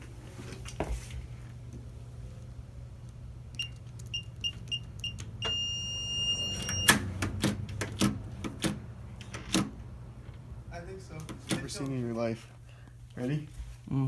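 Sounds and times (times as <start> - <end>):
long beep: 3.6 - 7.0
keypad beeps: 3.6 - 7.1.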